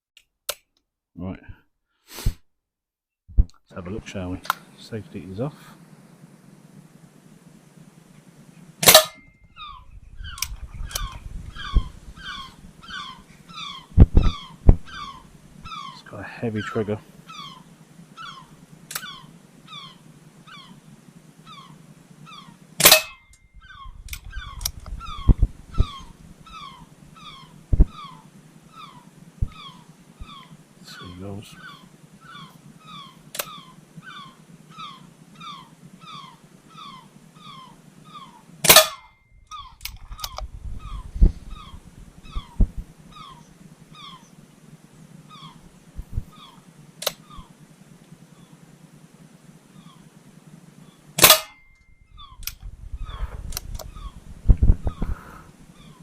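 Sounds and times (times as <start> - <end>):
gulls calling: 3.7 - 56.0
air pistol firing: 8.8 - 9.2, 22.8 - 23.2, 38.6 - 39.0, 51.2 - 51.6
sharp crack: 8.8 - 9.3, 22.8 - 23.3, 38.6 - 39.1, 51.2 - 51.6
low thumps: 13.9 - 15.2, 23.6 - 26.5, 27.7 - 28.0, 29.4 - 29.6, 40.0 - 42.9, 46.0 - 46.3, 52.1 - 55.2.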